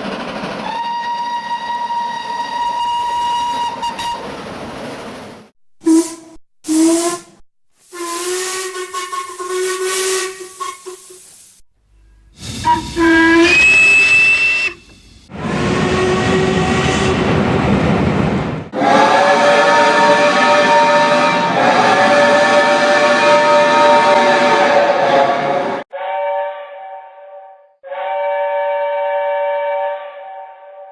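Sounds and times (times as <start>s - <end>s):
steam locomotive whistle: 0.6s - 4.4s, 5.8s - 11.5s, 12.2s - 17.4s, 18.8s - 30.9s
steam hissing: 5.9s - 11.6s, 12.3s - 17.2s.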